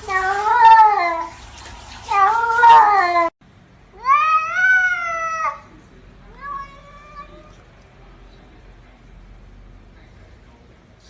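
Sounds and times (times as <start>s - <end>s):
cat meowing: 0.0s - 1.4s, 2.1s - 3.3s, 3.9s - 5.7s, 6.3s - 7.6s.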